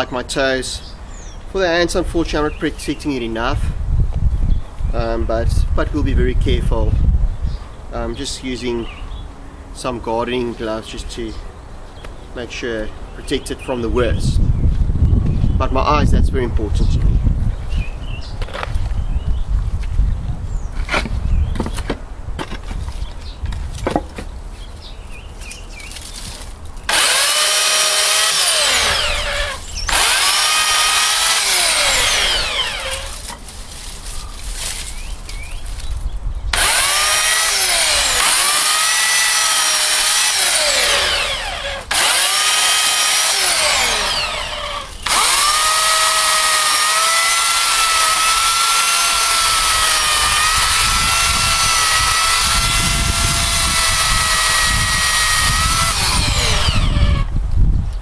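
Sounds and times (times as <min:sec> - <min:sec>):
electric chainsaw cutting branches: 0:26.9 - 0:33.4, 0:36.5 - 0:57.4.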